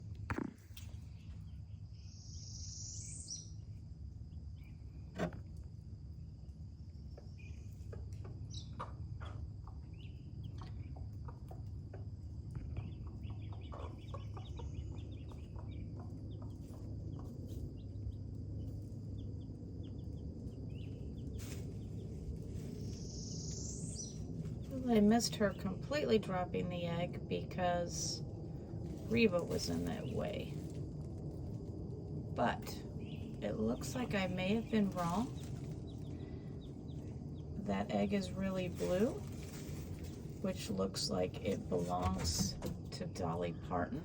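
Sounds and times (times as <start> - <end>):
wild birds chirping: 0.7 - 44.0.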